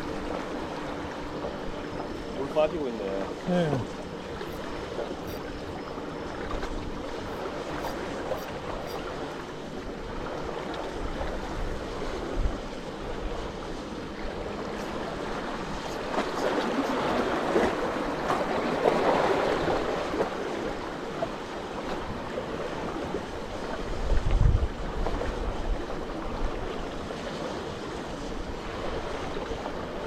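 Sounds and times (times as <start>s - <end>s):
sea water washing and surging: 0.0s - 30.0s
wind noise on microphone: 23.8s - 26.7s.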